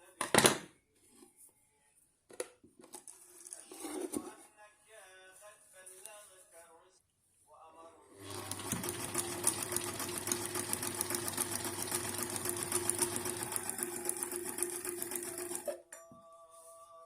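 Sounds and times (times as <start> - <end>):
sewing machine running: 8.2 - 15.8.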